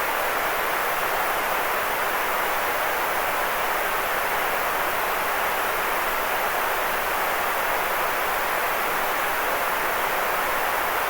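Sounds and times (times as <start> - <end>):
white noise hiss: 0.0 - 11.0.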